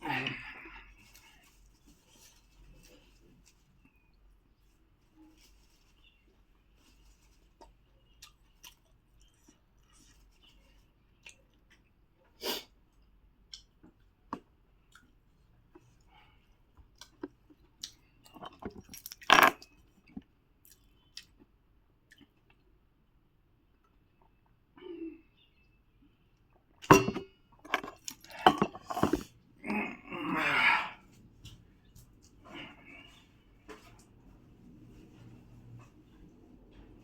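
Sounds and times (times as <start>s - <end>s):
food crunching: 17.0s - 21.5s.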